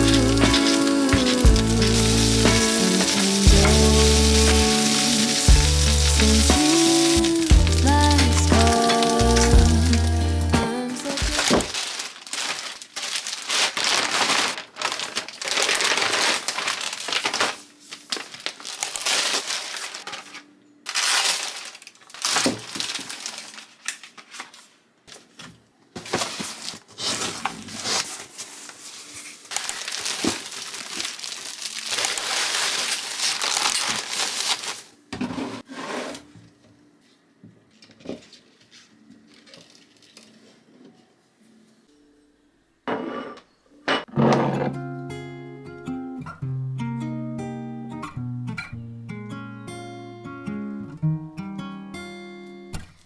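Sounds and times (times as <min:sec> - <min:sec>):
packaging crinkling: 0:00.0 - 0:25.4, 0:26.0 - 0:35.0, 0:38.2 - 0:40.5.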